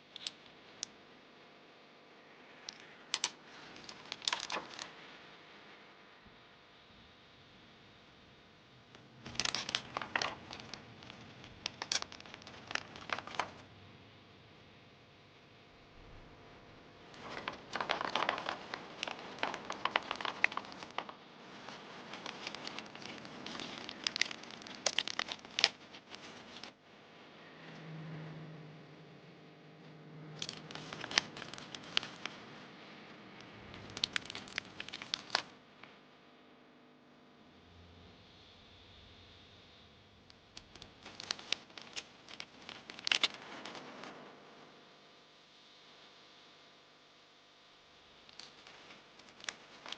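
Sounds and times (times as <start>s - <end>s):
packaging crinkling: 2.7s - 4.9s, 9.2s - 13.6s, 17.1s - 26.8s, 30.4s - 32.5s, 33.6s - 35.5s, 40.6s - 44.1s, 48.3s - 49.9s.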